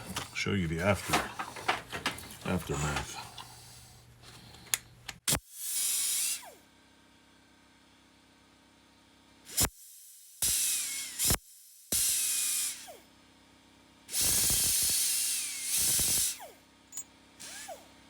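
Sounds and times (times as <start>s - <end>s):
compressed air hissing blasts: 14.2s - 15.2s.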